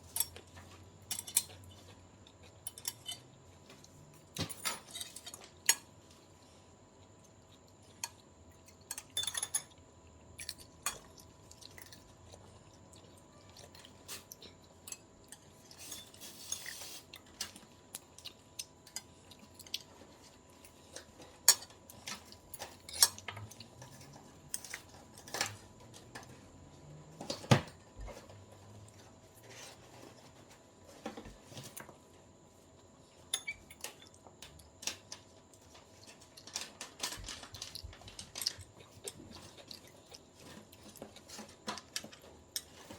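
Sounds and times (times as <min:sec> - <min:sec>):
utensils clinking against a dish: 0:00.0 - 0:03.4, 0:04.2 - 0:05.9, 0:08.0 - 0:09.8, 0:14.0 - 0:17.6, 0:20.6 - 0:26.4, 0:33.3 - 0:42.9.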